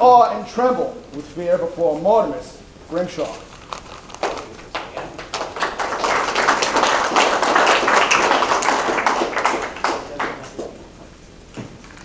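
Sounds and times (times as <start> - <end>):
audience clapping: 3.2 - 11.0.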